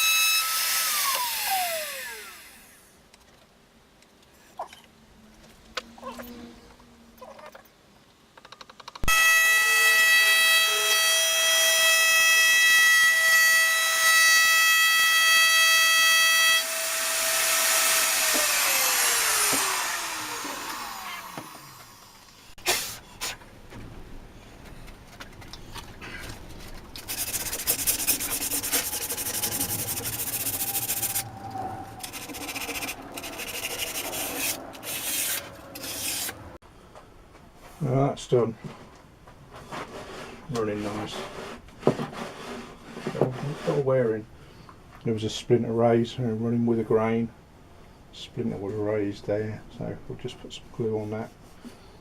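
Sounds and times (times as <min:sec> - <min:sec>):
electric router whining: 0:00.0 - 0:02.8, 0:09.1 - 0:22.4
wood rubbing and scraping: 0:24.5 - 0:36.4.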